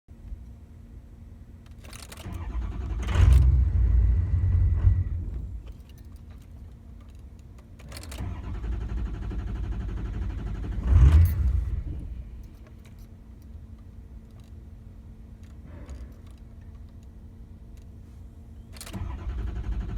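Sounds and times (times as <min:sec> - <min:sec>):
truck engine cranking: 0:01.8 - 0:07.2, 0:07.8 - 0:12.6, 0:18.7 - 0:19.9.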